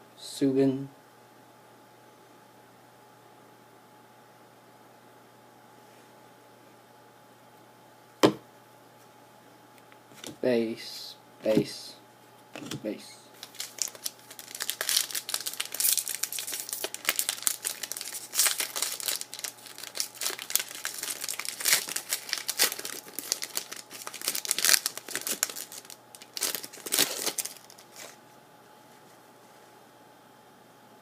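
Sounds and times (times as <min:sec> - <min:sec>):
wrapper tearing and crinkling: 0:12.6 - 0:28.2.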